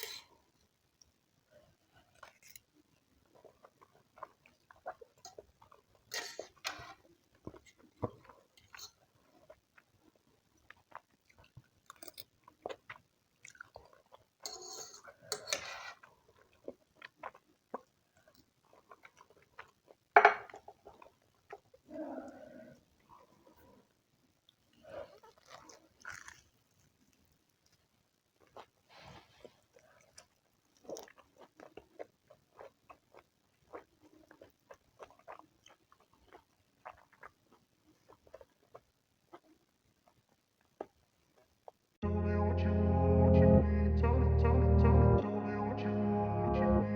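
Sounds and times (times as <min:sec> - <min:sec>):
person chewing: 0:03.2 - 0:21.7, 0:25.0 - 0:26.9, 0:28.4 - 0:41.8
chewing with wet mouth clicks: 0:25.2 - 0:26.8, 0:29.8 - 0:37.4.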